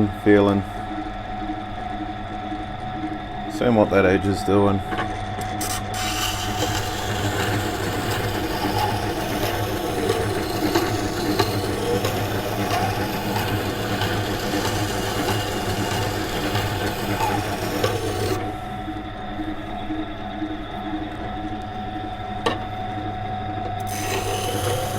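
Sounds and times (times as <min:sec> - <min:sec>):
grinder motor hum: 0:00.0 - 0:24.9
knife grinding on wet stone: 0:05.5 - 0:18.5, 0:23.9 - 0:24.9.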